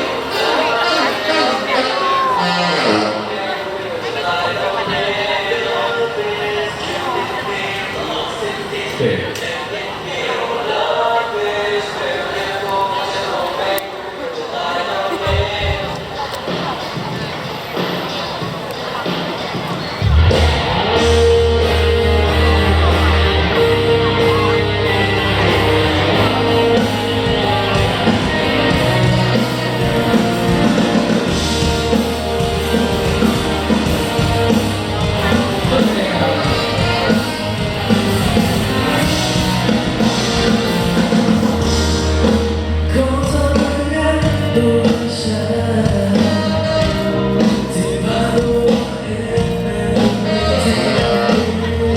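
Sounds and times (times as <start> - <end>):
live rock-pop band: 0.0 - 10.1, 10.8 - 51.9
person singing: 0.0 - 16.8, 20.0 - 51.9.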